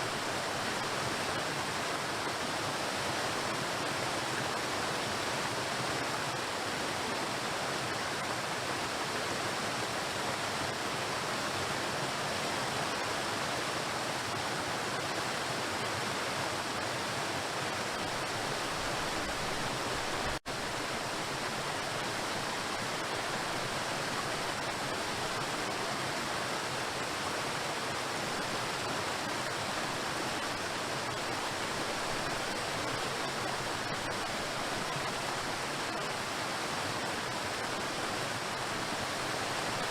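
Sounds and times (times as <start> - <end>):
waterfall rushing onto rocks: 16.6 - 39.9.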